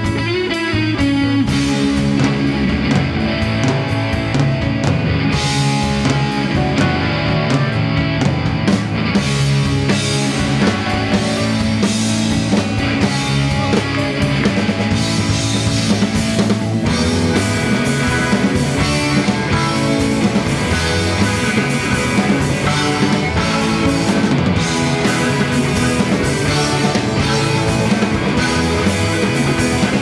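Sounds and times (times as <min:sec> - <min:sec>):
drum kit: 0:00.0 - 0:30.0
electric guitar: 0:00.0 - 0:30.0.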